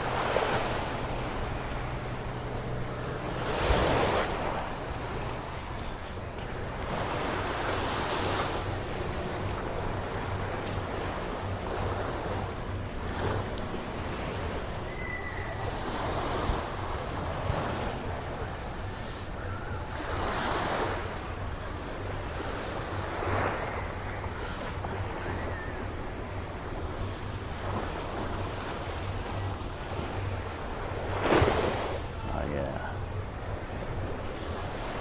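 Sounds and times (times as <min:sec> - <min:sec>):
wind rumbling on microphone: 0:00.0 - 0:35.0.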